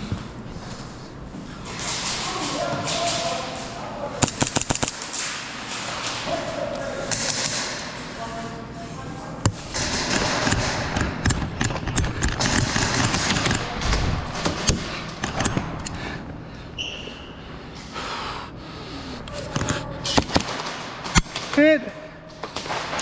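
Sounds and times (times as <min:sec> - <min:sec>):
sharp clicks and knocks: 0:09.4 - 0:16.0.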